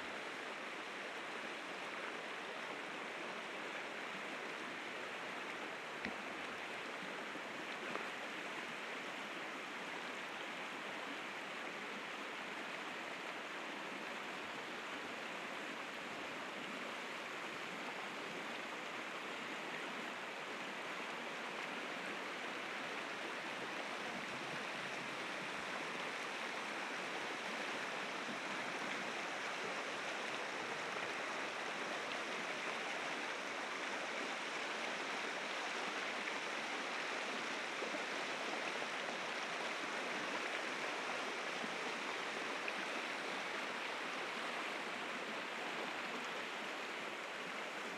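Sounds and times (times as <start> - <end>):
faint click: 6.0 - 6.2.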